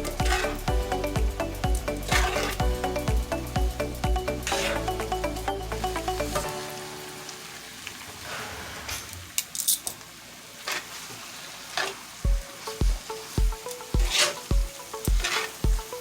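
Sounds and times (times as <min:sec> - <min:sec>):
background music with steady beat: 0:00.0 - 0:07.0, 0:12.3 - 0:16.0
food sizzling in a skillet: 0:00.0 - 0:08.4, 0:10.1 - 0:16.0.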